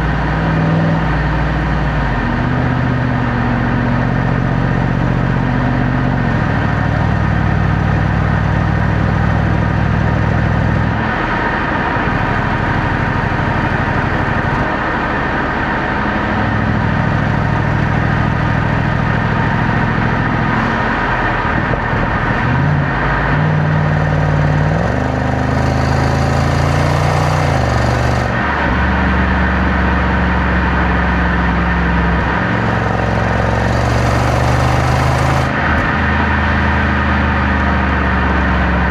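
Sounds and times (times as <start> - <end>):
car engine revving: 10.1 - 37.4.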